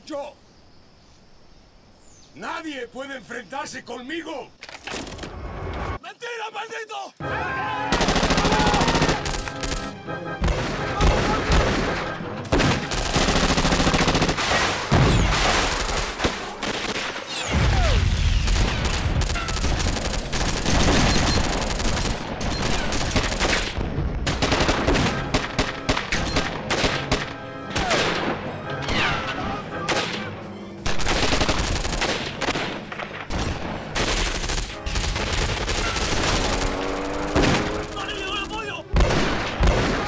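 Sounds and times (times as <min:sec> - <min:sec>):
gunfire: 0:07.9 - 0:40.0
automatic gunfire bursts: 0:12.6 - 0:17.2, 0:18.8 - 0:27.2, 0:30.9 - 0:32.6, 0:33.9 - 0:40.0.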